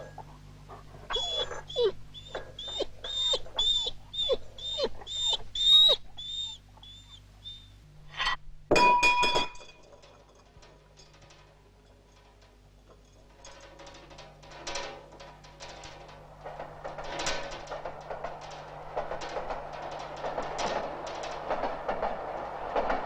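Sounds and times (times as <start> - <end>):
dog whimpering: 0.0 - 7.8
low steady hum: 0.0 - 23.0
sharp metallic clang: 8.7 - 9.9.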